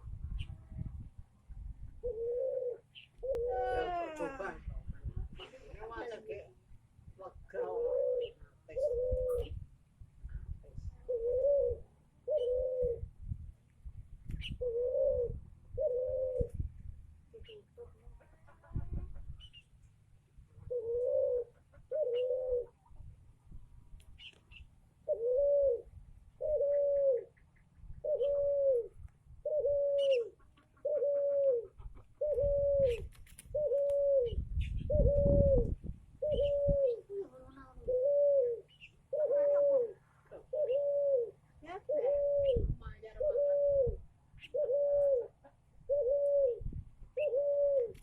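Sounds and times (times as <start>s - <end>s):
bird hooting: 2.0s - 4.2s, 11.1s - 13.0s, 14.5s - 16.5s, 20.7s - 22.8s, 25.0s - 27.4s, 28.0s - 33.0s, 33.6s - 48.0s.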